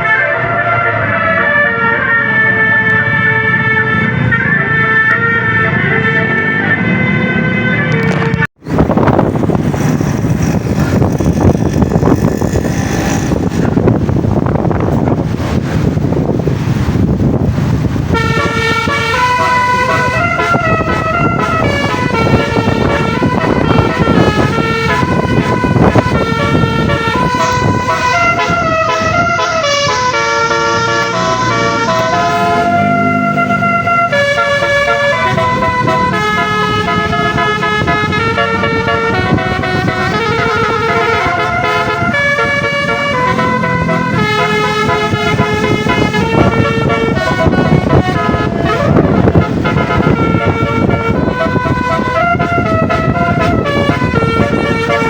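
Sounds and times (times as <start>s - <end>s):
multi-tone bus air horns: 0.0s - 55.0s
rush of noise: 8.0s - 55.0s
low rumble: 8.6s - 18.2s.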